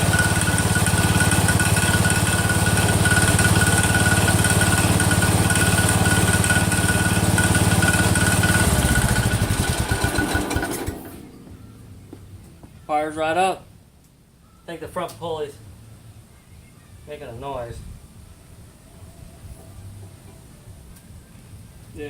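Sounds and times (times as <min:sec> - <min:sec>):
garden tractor engine running: 0:00.0 - 0:12.2.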